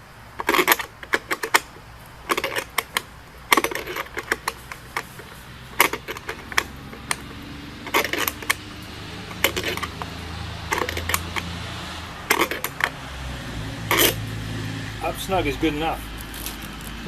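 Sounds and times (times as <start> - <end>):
wrench clicking: 0.4 - 11.6, 12.2 - 13.0, 13.8 - 14.2.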